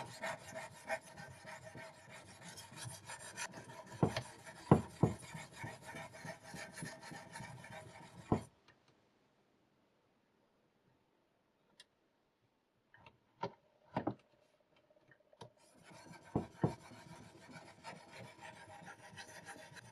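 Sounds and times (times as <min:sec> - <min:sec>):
sharpening stone rasping on knife: 0:00.0 - 0:08.3, 0:15.8 - 0:19.9.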